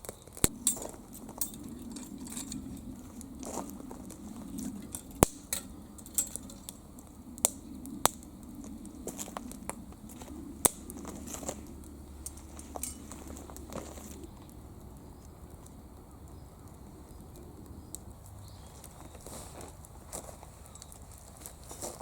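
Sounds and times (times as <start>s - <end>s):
sharp fire pops: 0.0s - 14.6s
wood fire crackling: 0.0s - 22.0s.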